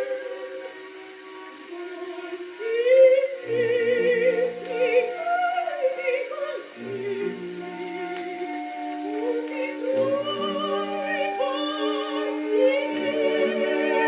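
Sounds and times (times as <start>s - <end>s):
soprano singing opera: 0.0s - 14.0s
orchestral accompaniment: 6.7s - 14.0s.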